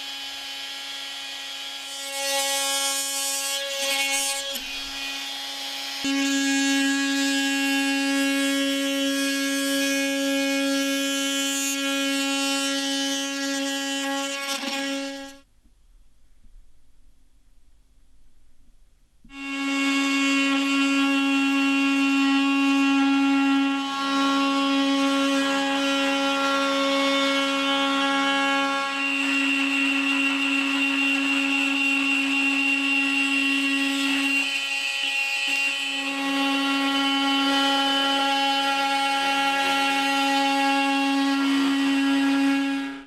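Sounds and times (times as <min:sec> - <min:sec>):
oscillating multi-tool buzzing: 0:25.4 - 0:42.8.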